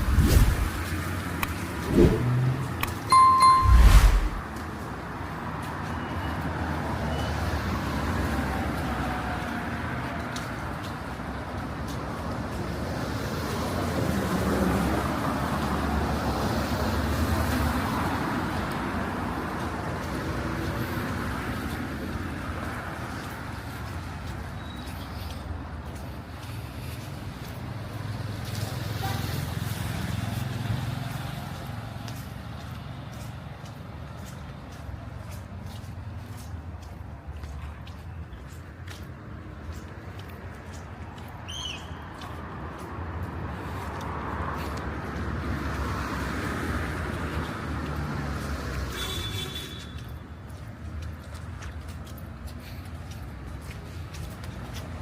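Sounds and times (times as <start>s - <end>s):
vehicle passing: 0.0s - 4.6s
street traffic passing: 0.0s - 55.0s.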